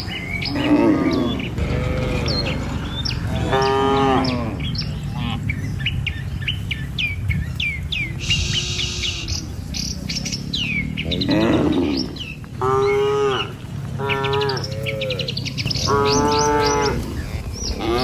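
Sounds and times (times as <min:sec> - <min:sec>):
birds chirping: 0:00.0 - 0:18.0
cattle mooing: 0:00.5 - 0:05.4, 0:11.1 - 0:18.0.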